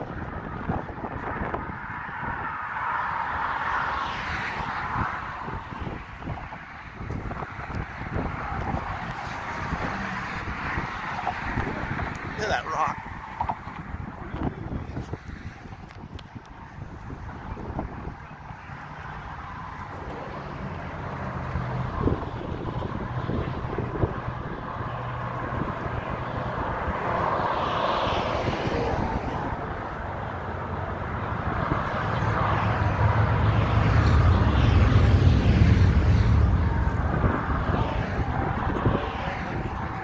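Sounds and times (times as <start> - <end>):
road traffic passing: 0.0 - 40.0
heavy vehicle engine rumble: 13.0 - 27.0.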